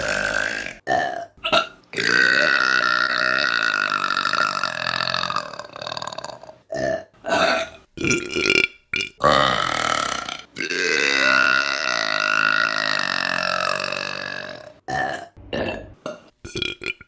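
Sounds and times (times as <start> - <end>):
women burping: 0.0 - 7.8.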